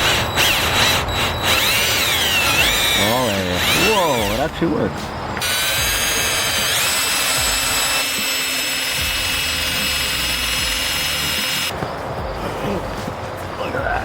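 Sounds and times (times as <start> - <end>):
electric drill motor whine: 0.0 - 4.4, 5.4 - 11.7.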